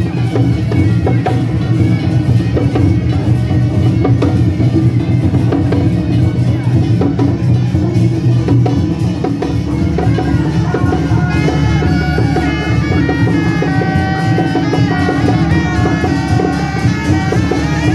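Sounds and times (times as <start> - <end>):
cymbal beats: 0.0 - 17.9
drum beats: 0.0 - 17.9
double-reed horn melody: 10.3 - 17.9.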